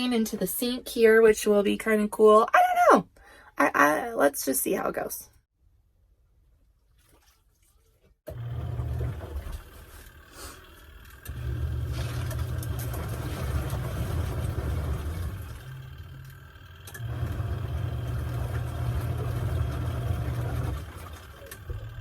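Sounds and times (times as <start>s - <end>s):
washing machine motor humming: 8.3s - 22.0s.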